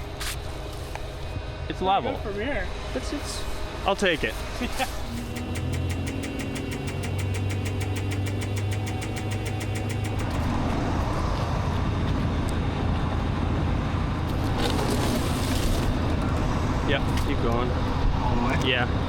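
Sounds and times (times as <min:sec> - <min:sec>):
diesel engine running: 0:00.0 - 0:19.0
fast regular ticking: 0:05.1 - 0:10.4.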